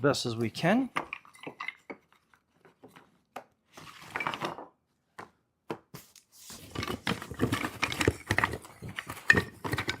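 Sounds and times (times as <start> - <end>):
wooden parts knocking together: 0.8 - 2.1, 6.8 - 10.0.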